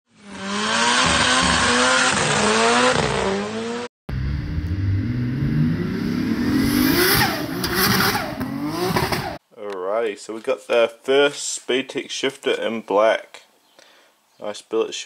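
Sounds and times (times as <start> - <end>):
car engine revving: 0.2 - 9.4.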